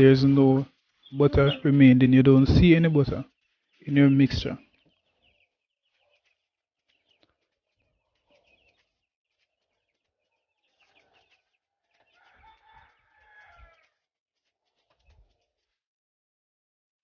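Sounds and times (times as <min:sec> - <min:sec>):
faint birds chirping: 0:00.0 - 0:15.8.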